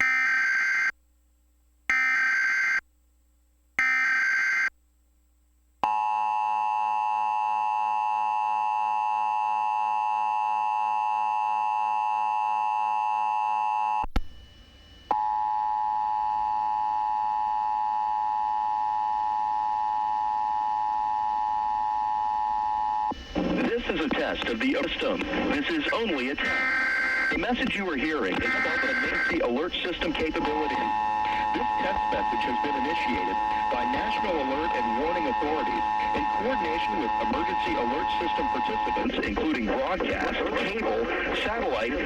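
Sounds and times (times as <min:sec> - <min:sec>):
shrill buzzy data bursts: 0:23.1 - 0:42.0.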